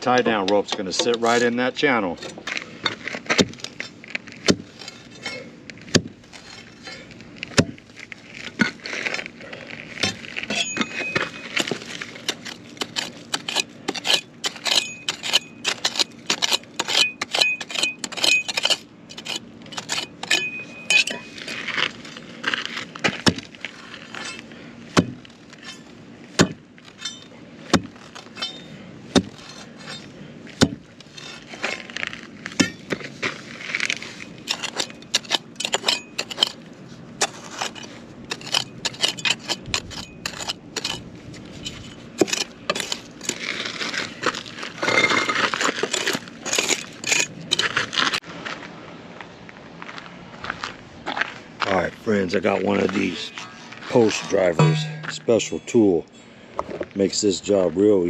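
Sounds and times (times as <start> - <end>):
sharp clinks and knocks: 10.0 - 11.8, 54.3 - 55.9.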